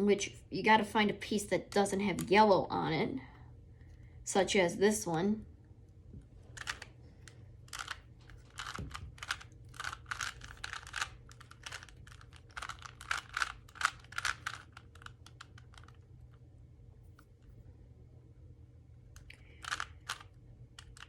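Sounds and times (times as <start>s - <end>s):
puzzle cube plastic clicks: 6.5s - 16.4s, 19.1s - 21.0s.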